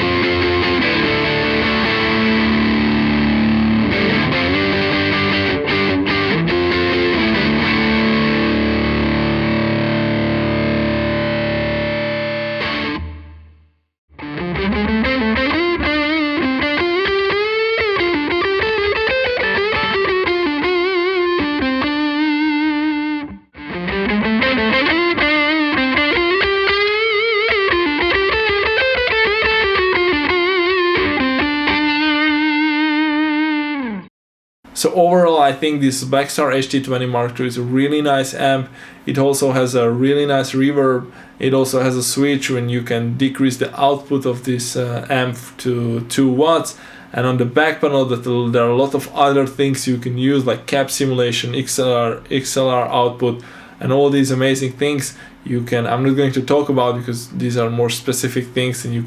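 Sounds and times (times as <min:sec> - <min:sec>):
distorted electric guitar: 0:00.0 - 0:34.1.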